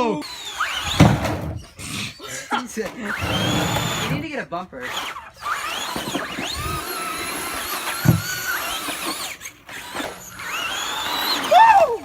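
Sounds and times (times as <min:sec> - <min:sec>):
electric rc car motor whining: 0:00.0 - 0:12.0
loud thump: 0:00.9 - 0:01.6, 0:08.0 - 0:08.4.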